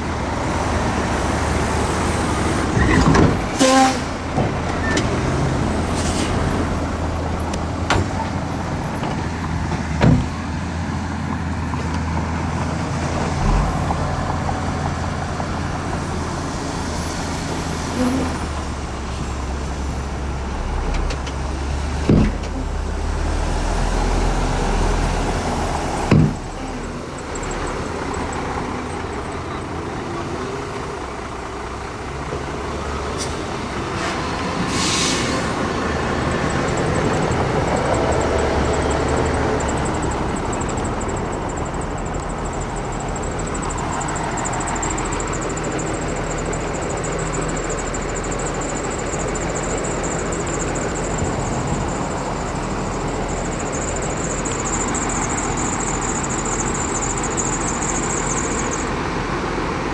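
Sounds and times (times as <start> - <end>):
heavy diesel engine running: 0.0 - 59.9.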